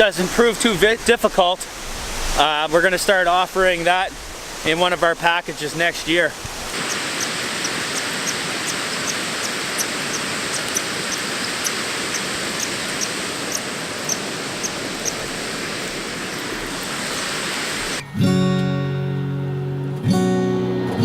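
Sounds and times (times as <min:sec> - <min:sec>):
waterfall rushing: 0:00.0 - 0:18.0
faint high ticks: 0:06.7 - 0:18.0.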